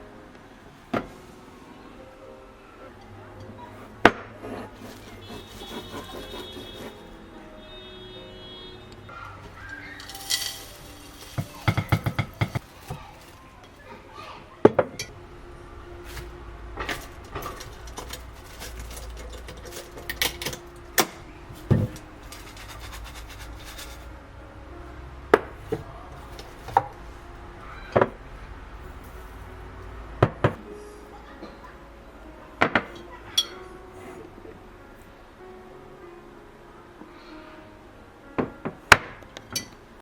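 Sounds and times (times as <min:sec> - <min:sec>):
dishes and utensils clinking: 0:09.1 - 0:14.0, 0:14.6 - 0:15.2, 0:16.0 - 0:24.1, 0:32.6 - 0:33.7, 0:39.5 - 0:39.8.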